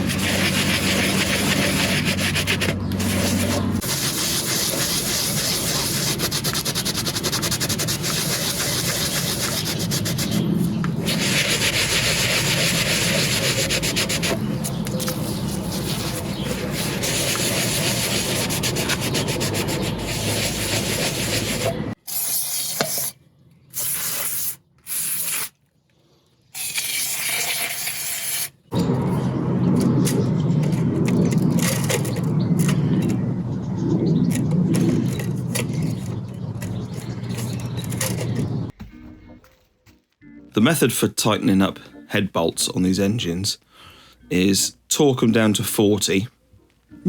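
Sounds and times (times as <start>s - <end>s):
abrasive rubbing on a surface: 0.0s - 21.9s.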